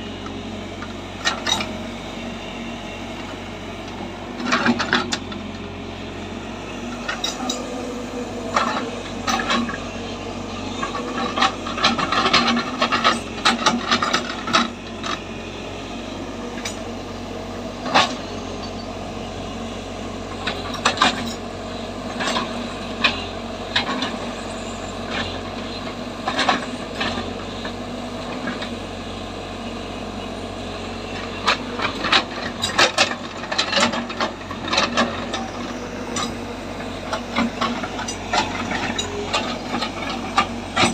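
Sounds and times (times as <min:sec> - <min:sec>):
earthmoving machine engine running: 0:00.0 - 0:40.9
metal clanks and scraping: 0:31.4 - 0:40.9.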